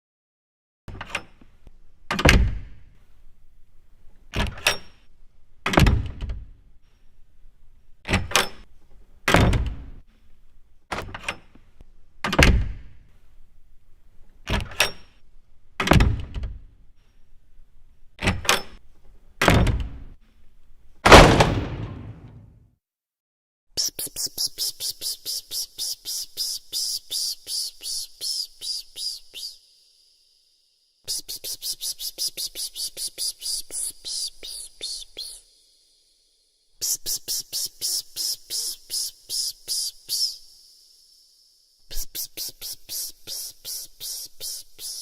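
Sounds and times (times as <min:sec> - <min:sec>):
knocks or thuds: 0:21.1 - 0:22.5.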